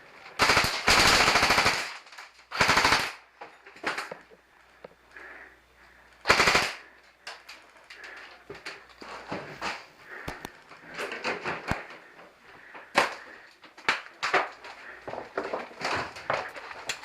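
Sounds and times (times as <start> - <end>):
airsoft guns firing bursts: 0.4 - 3.2, 6.2 - 6.8.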